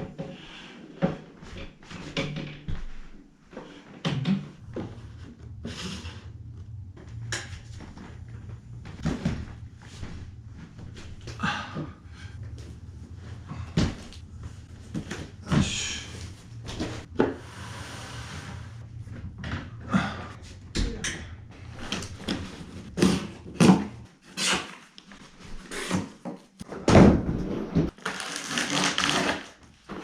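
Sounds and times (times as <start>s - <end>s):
steady low hum: 4.5s - 24.1s.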